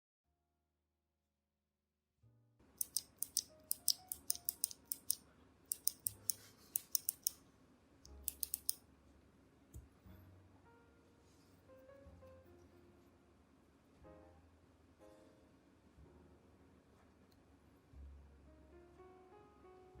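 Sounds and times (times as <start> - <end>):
clicky keyboard keys: 2.8 - 7.4, 8.1 - 8.8
soft background music: 2.8 - 7.4, 8.0 - 20.0.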